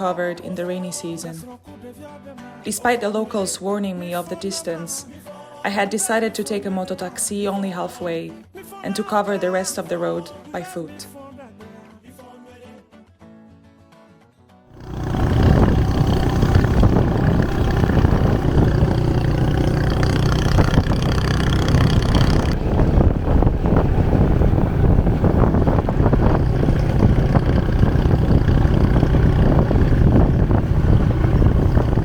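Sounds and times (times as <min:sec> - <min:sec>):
motorcycle engine running: 0:14.8 - 0:32.0
wind buffeting microphone: 0:14.8 - 0:32.0.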